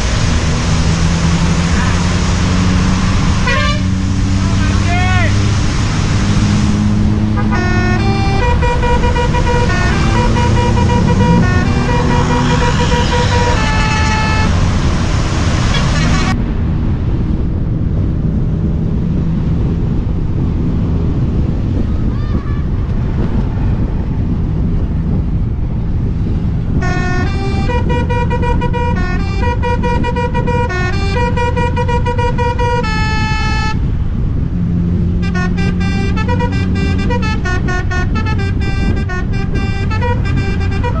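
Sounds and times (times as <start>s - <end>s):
bus engine running: 0.0s - 41.0s
road noise: 0.0s - 41.0s
multi-tone bus horn tune: 1.0s - 4.9s, 6.9s - 16.4s, 26.6s - 34.0s, 35.0s - 41.0s.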